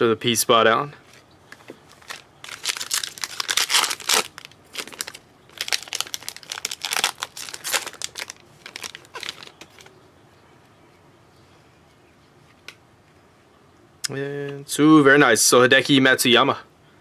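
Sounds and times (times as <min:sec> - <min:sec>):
foil wrapper tearing and crinkling: 0:01.6 - 0:09.9.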